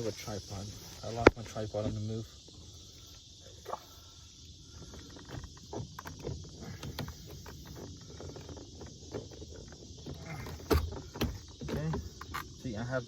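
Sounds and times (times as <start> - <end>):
steady hiss: 0.0 - 13.0
plastic parts clicking and knocking: 4.9 - 12.6.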